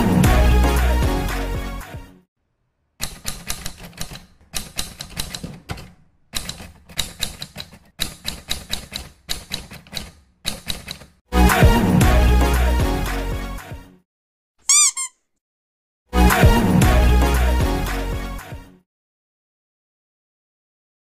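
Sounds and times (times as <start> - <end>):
typewriter keys clacking: 3.0 - 11.2.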